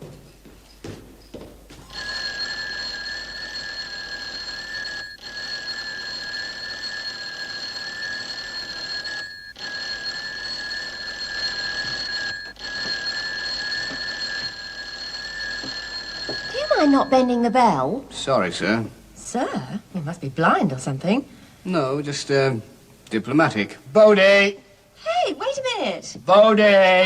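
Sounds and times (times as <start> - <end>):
electric doorbell ringing: 1.9 - 17.4.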